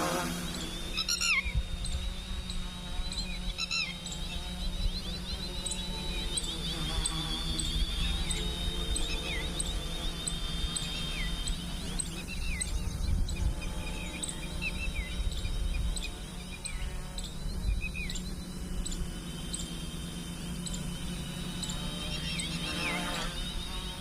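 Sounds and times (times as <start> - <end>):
wind rumble on microphone: 0.0 - 19.2
birds chirping: 0.0 - 24.0
high insect-like tone: 0.0 - 24.0.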